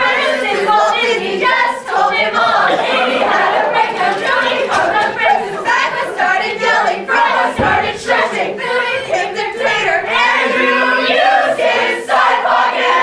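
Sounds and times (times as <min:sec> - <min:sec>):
crowd singing together: 0:00.0 - 0:13.0
low thump: 0:07.6 - 0:08.2.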